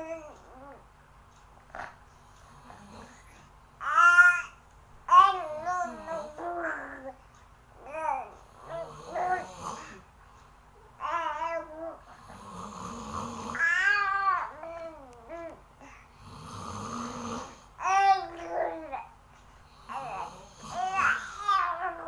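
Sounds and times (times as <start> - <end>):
small child babbling and whining: 0.0 - 0.9, 3.8 - 7.2, 7.8 - 10.0, 10.9 - 12.1, 13.5 - 15.9, 17.8 - 19.2, 19.9 - 22.0
man snoring: 12.2 - 13.6, 16.2 - 17.7, 19.7 - 21.4.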